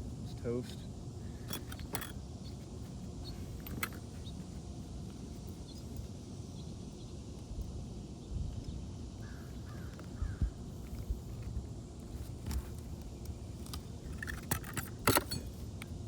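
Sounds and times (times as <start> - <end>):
faint bird calls: 9.1 - 10.9.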